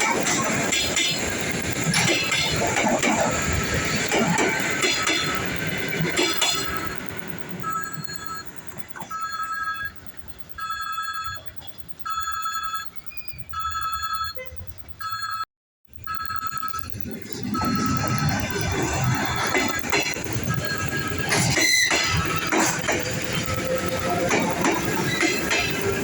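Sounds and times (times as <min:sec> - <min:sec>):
passing train: 0:00.0 - 0:15.2, 0:16.0 - 0:26.0
electronic warning beeps: 0:00.6 - 0:26.0.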